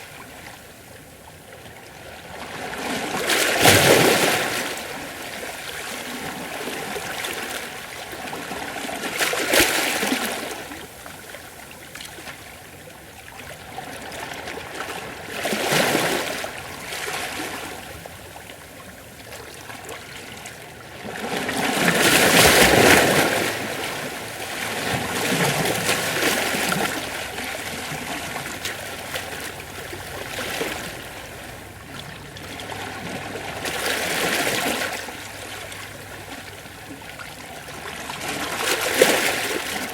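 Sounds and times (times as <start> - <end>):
ocean waves washing over rocks: 20.9 - 39.9.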